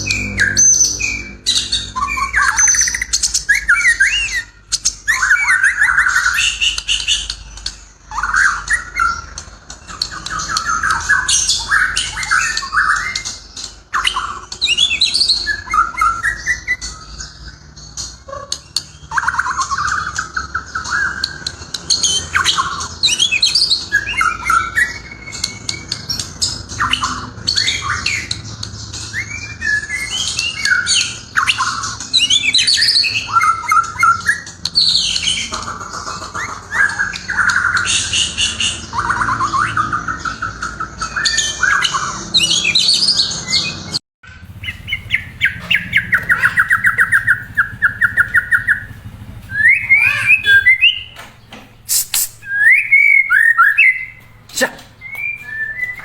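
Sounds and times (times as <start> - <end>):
bird singing whistled phrases: 44.6 - 51.3, 51.9 - 54.2, 55.0 - 56.0.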